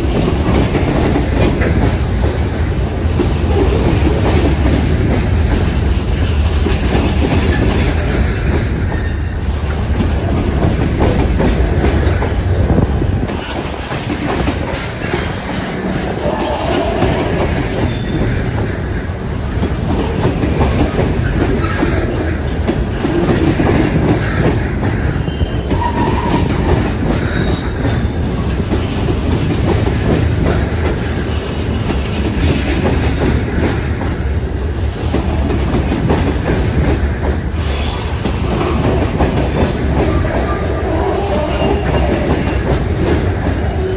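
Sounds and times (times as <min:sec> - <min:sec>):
freight train rumbling past: 0:00.0 - 0:43.9
wheels clicking over rail joints: 0:00.0 - 0:43.9
wheel squeals: 0:16.1 - 0:18.4, 0:40.0 - 0:42.8.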